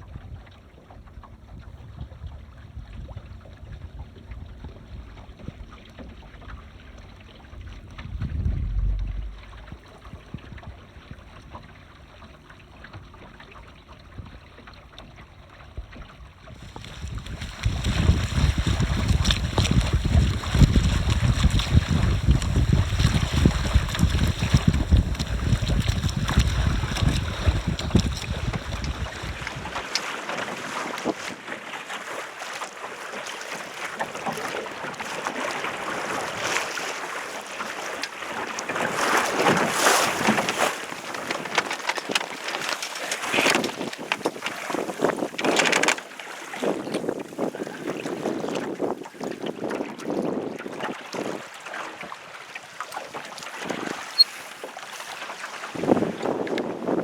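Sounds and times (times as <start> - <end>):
water rushing past boat: 0.0 - 57.0
wind buffeting microphone: 7.5 - 10.8, 16.6 - 29.8, 43.3 - 51.4, 55.7 - 57.0.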